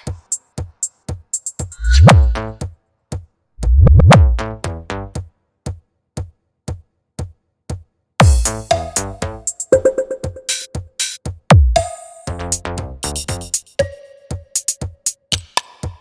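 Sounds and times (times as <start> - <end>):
deep bass booms: 1.8 - 2.6, 3.6 - 5.2.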